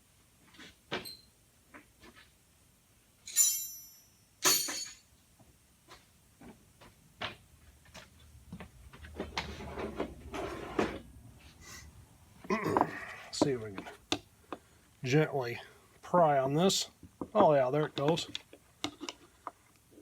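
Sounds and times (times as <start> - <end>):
scraping and handling noise: 5.8 - 14.6, 17.0 - 20.0.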